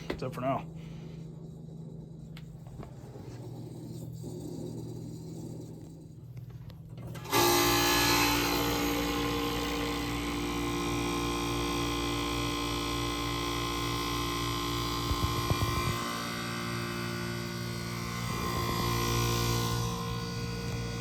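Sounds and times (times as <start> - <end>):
electric appliance motor humming: 0.0 - 21.0.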